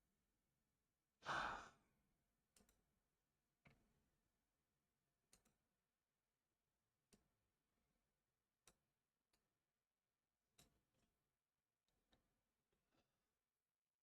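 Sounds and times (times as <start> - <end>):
person sighing: 1.2 - 1.7.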